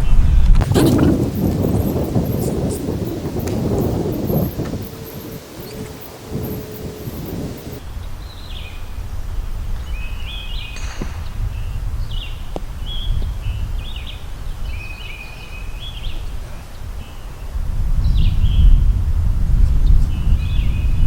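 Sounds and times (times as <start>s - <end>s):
wind buffeting microphone: 0.5s - 7.9s, 16.8s - 21.0s
bird chirping: 0.6s - 7.8s.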